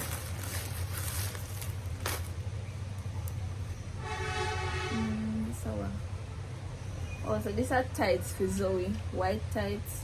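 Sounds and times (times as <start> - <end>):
plastic packaging crinkling: 0.0 - 3.4
steady low hum: 0.0 - 10.0.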